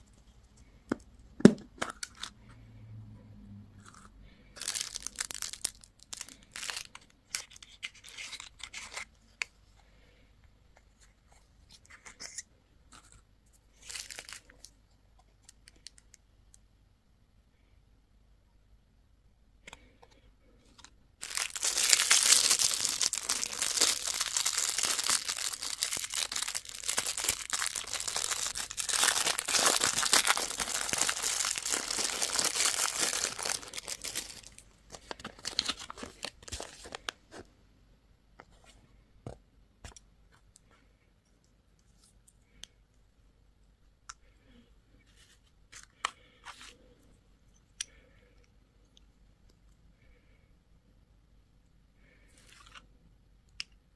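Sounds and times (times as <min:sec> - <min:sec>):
wrapper being torn and crumpled: 0:04.6 - 0:09.1, 0:13.8 - 0:14.6, 0:21.2 - 0:37.1
small clicks and crinkles: 0:11.7 - 0:16.6.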